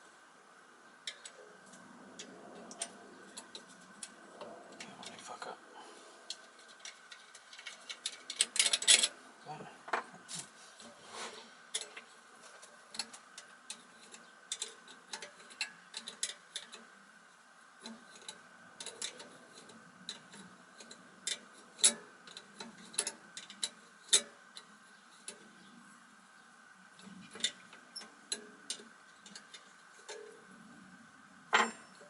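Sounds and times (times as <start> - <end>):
hand tools tapping metal: 31.5 - 32.0.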